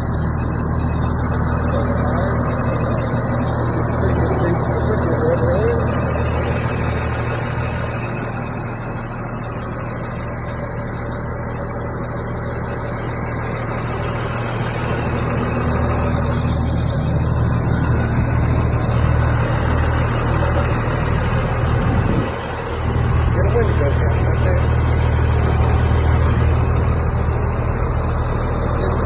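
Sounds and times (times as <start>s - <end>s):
diesel engine humming: 0.0s - 29.0s.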